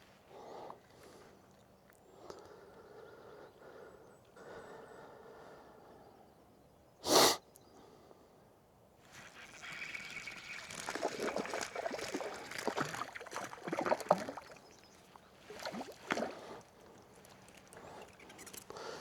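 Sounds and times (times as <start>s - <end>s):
fish splashing in water: 9.1s - 19.0s.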